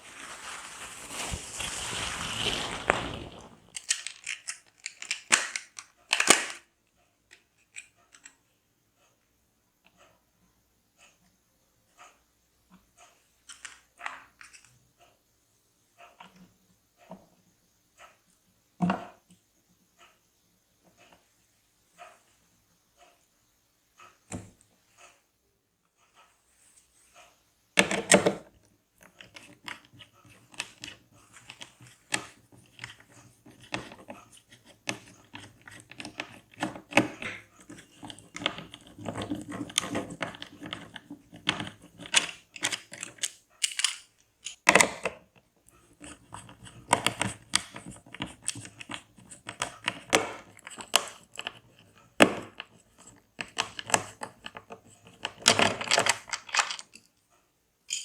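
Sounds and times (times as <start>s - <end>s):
cardboard and plastic rustling: 0.0s - 6.6s
packaging clicks and taps: 3.7s - 6.6s, 29.1s - 45.2s, 46.0s - 51.6s.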